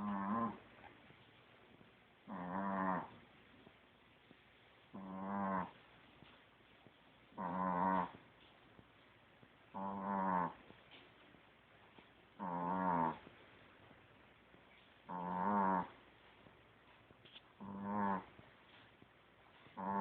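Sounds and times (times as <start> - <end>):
dog snoring: 0.0 - 0.9, 2.2 - 3.2, 4.9 - 5.8, 7.3 - 8.2, 9.7 - 10.7, 12.4 - 13.3, 15.1 - 16.0, 17.6 - 18.4, 19.7 - 20.0.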